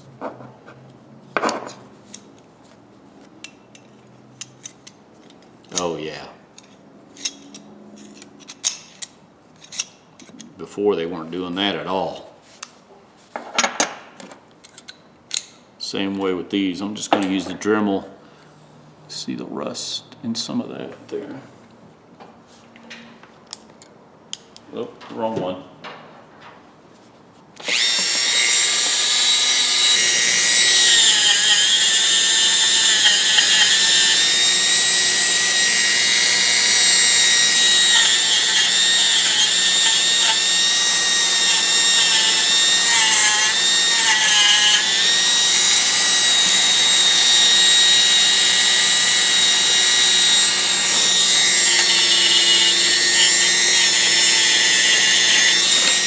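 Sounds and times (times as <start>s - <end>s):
rotary tool whining on steel: 27.6s - 56.0s.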